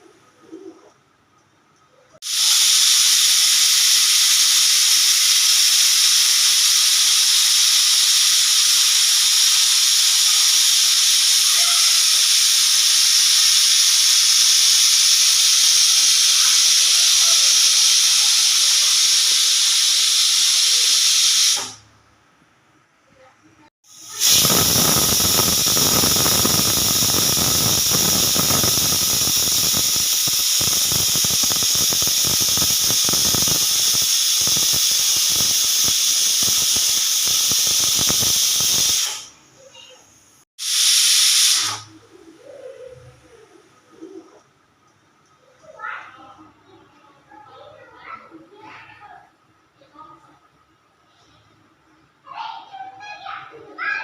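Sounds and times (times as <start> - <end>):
pressure cooker whistle hissing: 2.2 - 21.8, 23.8 - 39.4, 40.6 - 41.9.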